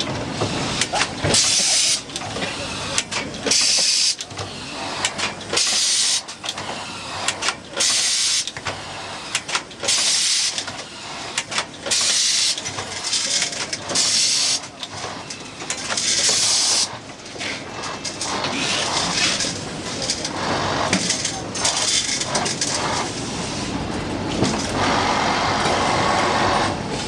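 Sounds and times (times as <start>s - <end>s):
screw machine hissing bursts: 7.8s - 8.5s, 11.9s - 12.6s.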